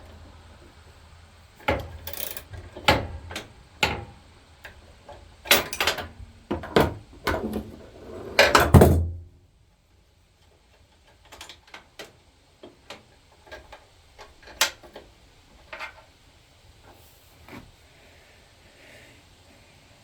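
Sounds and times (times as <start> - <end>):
metal parts clicking and clinking: 1.7 - 3.4, 5.5 - 6.1.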